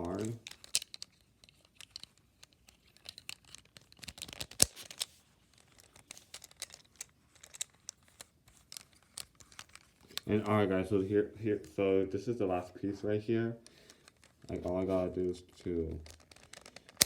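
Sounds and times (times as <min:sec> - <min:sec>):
plastic cube pieces clicking: 0:00.0 - 0:10.3, 0:15.9 - 0:17.0.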